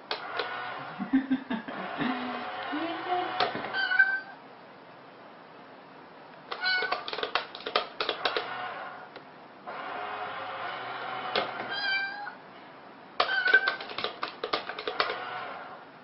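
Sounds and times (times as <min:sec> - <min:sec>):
cat meowing: 0:03.7 - 0:04.4, 0:06.5 - 0:07.2, 0:11.7 - 0:12.4, 0:13.2 - 0:13.8
clicks and taps: 0:06.4 - 0:08.5, 0:13.2 - 0:15.3.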